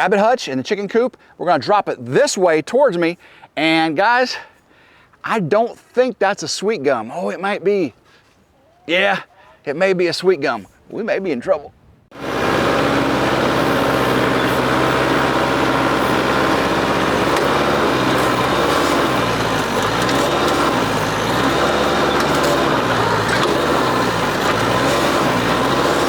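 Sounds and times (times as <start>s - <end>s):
tractor diesel engine running: 12.1s - 26.0s.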